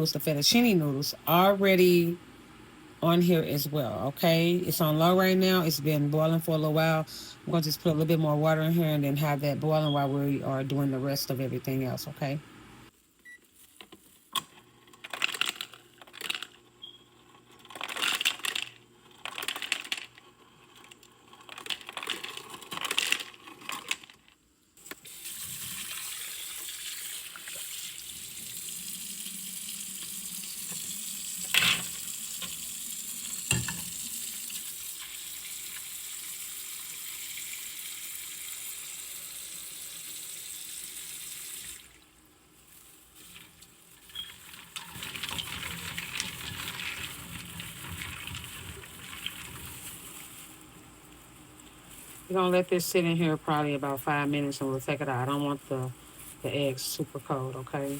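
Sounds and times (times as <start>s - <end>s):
kitchen tap running: 24.9s - 42.2s, 43.2s - 50.6s
pots and utensils clattering: 33.4s - 34.0s.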